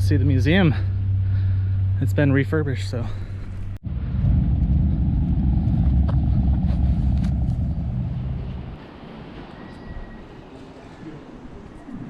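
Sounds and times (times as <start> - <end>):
loud low rumble: 0.0 - 9.0.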